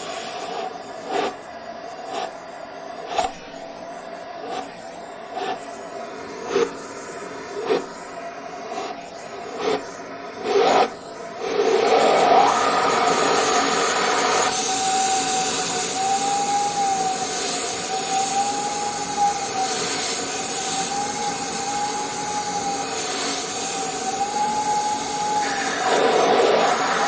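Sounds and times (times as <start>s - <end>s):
vacuum cleaner running: 0.0s - 27.0s.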